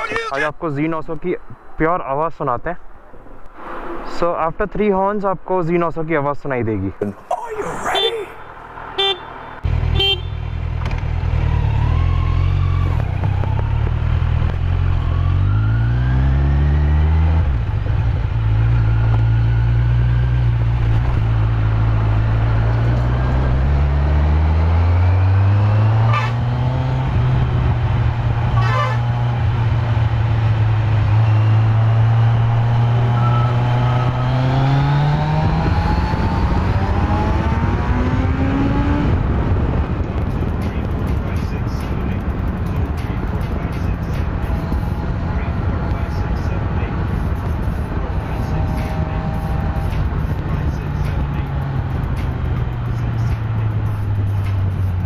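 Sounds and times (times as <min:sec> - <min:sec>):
motorcycle engine accelerating: 0:09.6 - 0:41.2, 0:44.0 - 0:55.0.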